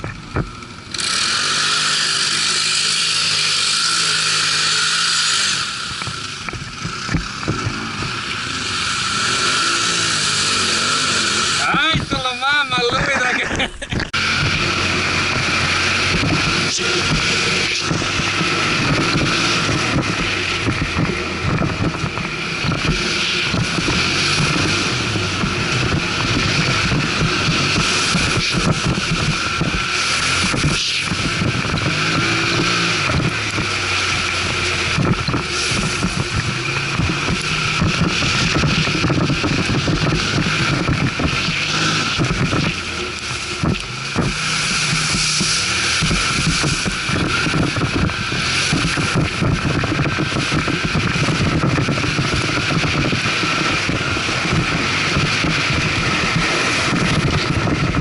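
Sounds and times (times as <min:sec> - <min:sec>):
atv engine running: 0:00.0 - 0:58.0
wind buffeting microphone: 0:12.8 - 0:58.0.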